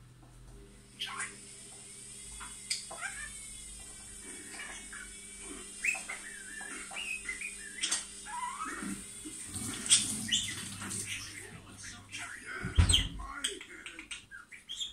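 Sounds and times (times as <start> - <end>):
steady background hum: 0.0 - 14.9
budgerigar warbling: 1.0 - 1.4, 2.7 - 3.4, 4.3 - 9.0, 9.7 - 13.5.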